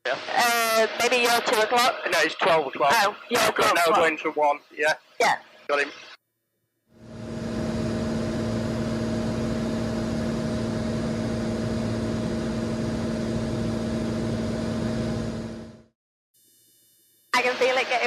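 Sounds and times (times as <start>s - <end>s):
propeller plane engine drone: 7.0s - 15.9s.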